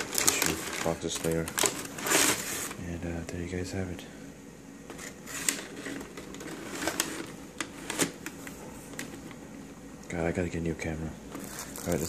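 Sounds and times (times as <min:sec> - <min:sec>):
packaging rustling: 0:00.0 - 0:02.8, 0:04.9 - 0:09.4, 0:11.3 - 0:12.0.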